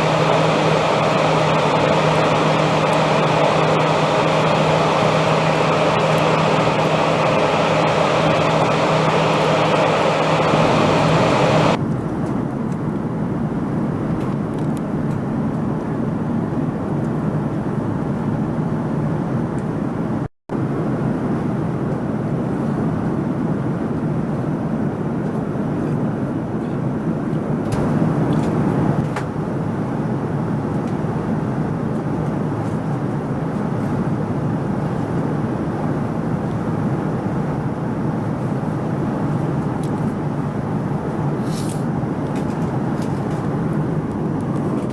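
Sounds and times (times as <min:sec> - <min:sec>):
airliner cabin noise: 0:00.0 - 0:12.5, 0:25.2 - 0:44.9.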